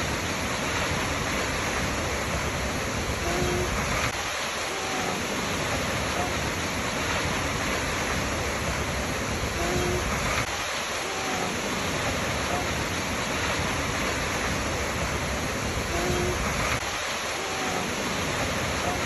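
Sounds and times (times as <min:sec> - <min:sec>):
waterfall rushing: 0:00.0 - 0:19.0.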